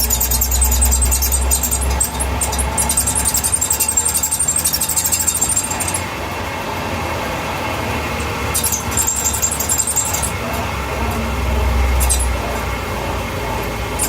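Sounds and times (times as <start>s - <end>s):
high squeaking from car: 0.0s - 6.2s, 8.4s - 12.9s
car drivetrain and road rumble: 0.0s - 14.0s.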